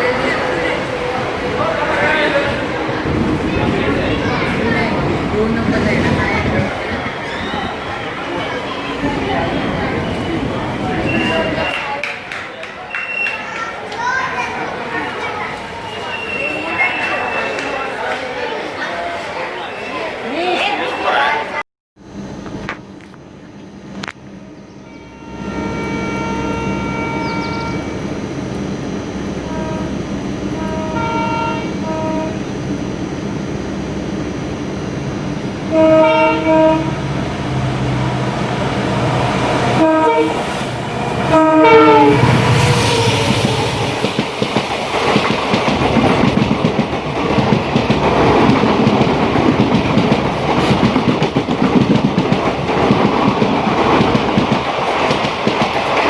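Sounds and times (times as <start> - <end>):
train rumble: 0.0 - 18.8, 22.0 - 56.0
train horn blasts: 24.8 - 28.0, 29.3 - 32.5, 35.7 - 37.2, 39.5 - 44.0.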